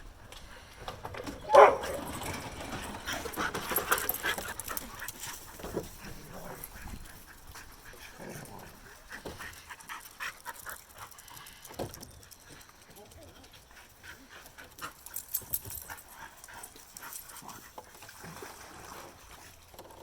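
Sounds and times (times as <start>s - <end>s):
dogs scuffling: 0.8s - 17.7s
dog crying out: 1.4s - 2.1s
dog panting: 1.6s - 18.2s.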